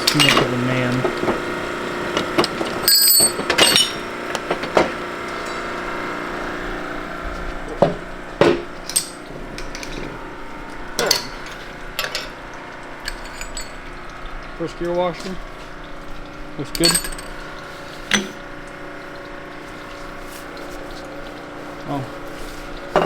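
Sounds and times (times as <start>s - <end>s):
steel parts clinking and knocking: 0.0s - 0.6s, 2.4s - 4.1s, 13.1s - 13.8s, 16.7s - 17.4s.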